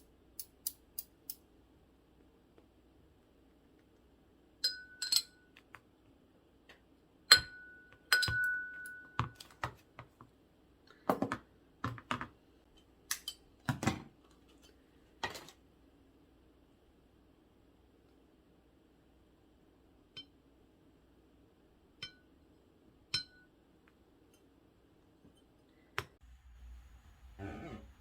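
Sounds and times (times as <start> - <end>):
kitchenware clinking: 4.6 - 5.5, 7.3 - 9.5
kitchenware knocks and thuds: 11.1 - 12.3, 13.7 - 14.1.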